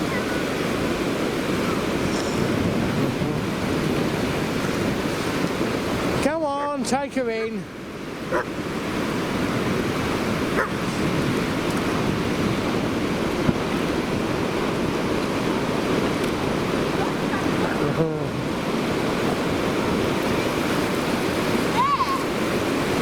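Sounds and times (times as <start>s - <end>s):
wind on microphone: 0.0s - 6.8s, 7.7s - 23.0s
surf breaking on beach: 0.0s - 23.0s.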